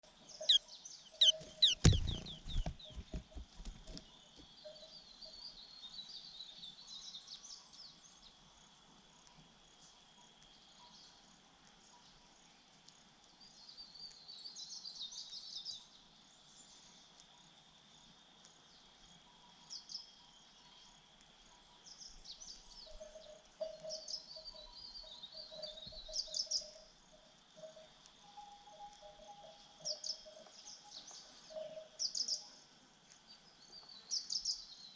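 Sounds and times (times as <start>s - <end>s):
chicks chirping: 0.4s - 4.0s.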